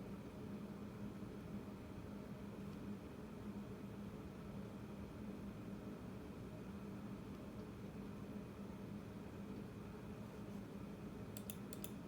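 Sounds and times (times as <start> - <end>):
faint low hum with hiss: 0.0 - 12.0.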